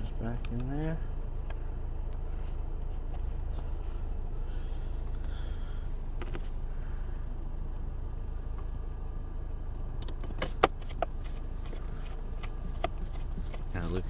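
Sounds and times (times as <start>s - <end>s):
steady low rumble: 0.0s - 10.3s.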